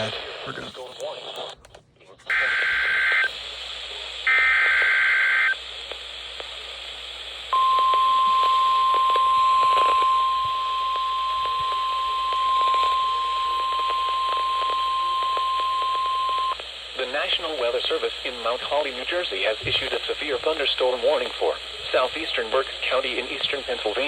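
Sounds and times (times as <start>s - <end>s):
radio hiss: 0.0s - 24.0s
weather radio alarm tone: 2.3s - 3.3s, 4.3s - 5.6s, 7.6s - 16.6s.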